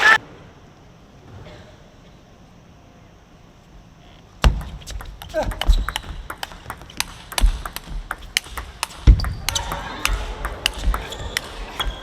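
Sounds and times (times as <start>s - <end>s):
table tennis ball clicking: 4.4s - 12.0s.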